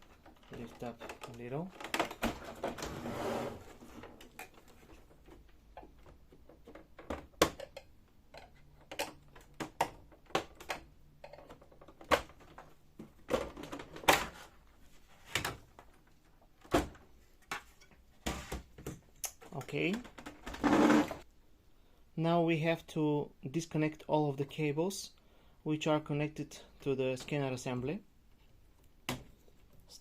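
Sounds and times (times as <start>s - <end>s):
plastic clicks and knocks: 4.2s - 14.3s.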